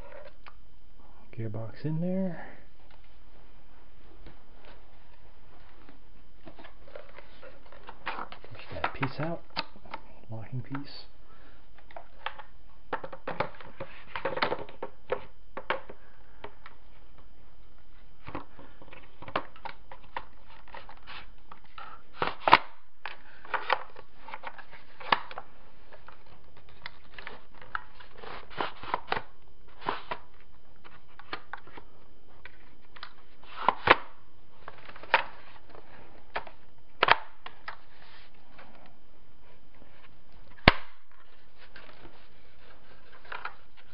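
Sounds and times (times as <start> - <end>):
sharp plastic snaps: 8.8 - 10.0, 40.6 - 41.0.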